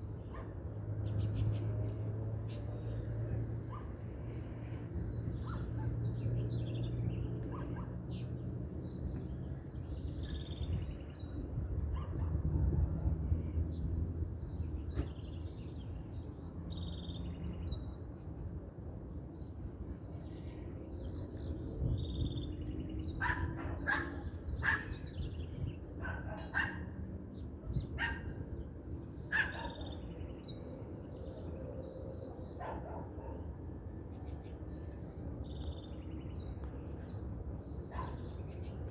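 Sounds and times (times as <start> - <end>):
small birds chirping: 0.0 - 38.9
dog barking: 0.3 - 0.6, 7.5 - 8.0, 11.9 - 12.4, 23.2 - 25.0, 26.0 - 26.9, 28.0 - 28.3, 29.3 - 29.9, 32.6 - 33.4, 37.9 - 38.2.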